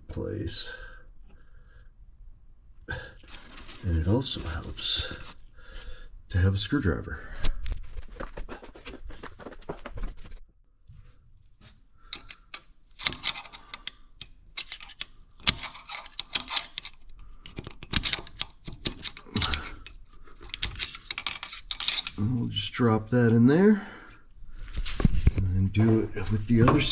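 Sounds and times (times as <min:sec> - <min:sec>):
screwdriver clicking on steel parts: 0:12.1 - 0:22.2.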